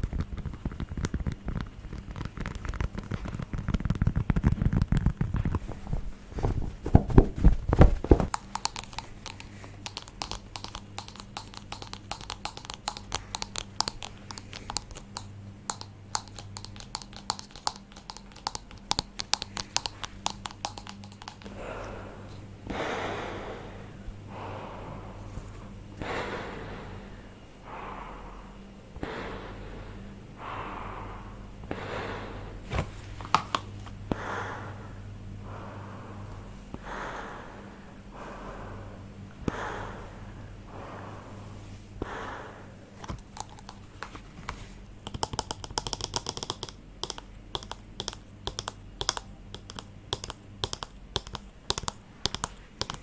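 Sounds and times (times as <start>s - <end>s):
fast light crisp taps: 0.0s - 22.0s, 32.7s - 34.0s, 43.0s - 53.0s.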